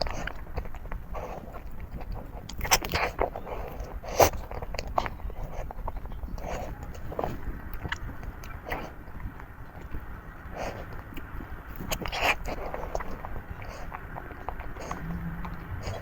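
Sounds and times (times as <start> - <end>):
mouth clicks and smacks: 0.0 - 16.0
person chewing: 0.0 - 16.0.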